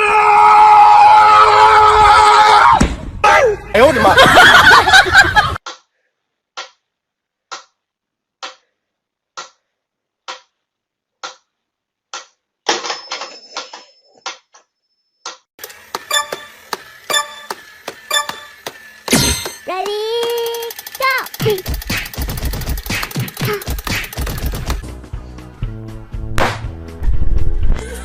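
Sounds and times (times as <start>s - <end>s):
sharp ticks: 19.7s - 24.8s.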